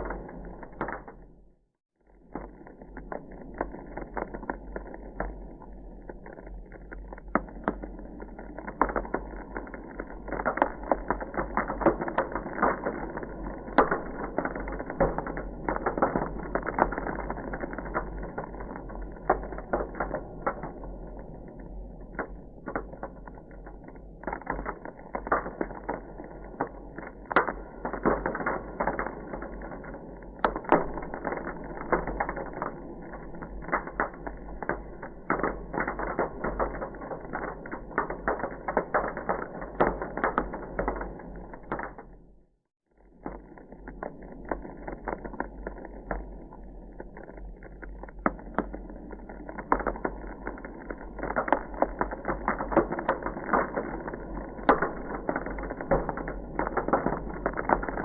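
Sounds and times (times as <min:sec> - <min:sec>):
ice crackling: 0:43.3 - 0:58.0.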